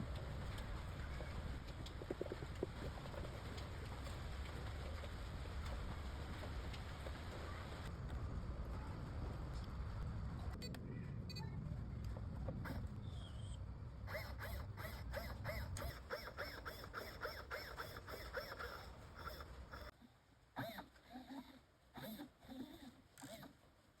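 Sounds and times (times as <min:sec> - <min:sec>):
servo whirring: 0:14.0 - 0:19.9, 0:22.0 - 0:23.6.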